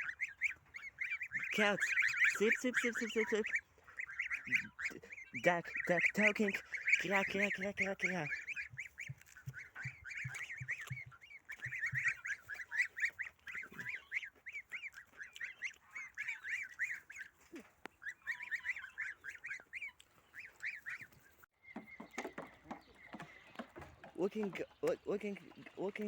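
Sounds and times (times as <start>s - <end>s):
duck calling rapidly: 0.0s - 17.4s, 18.0s - 21.1s.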